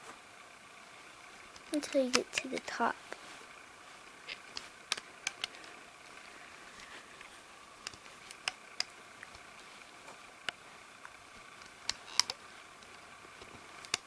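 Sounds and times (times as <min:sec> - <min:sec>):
faint steady hiss: 0:00.0 - 0:14.0
rubber bands clicking on plastic pegs: 0:04.3 - 0:05.6, 0:10.5 - 0:14.0.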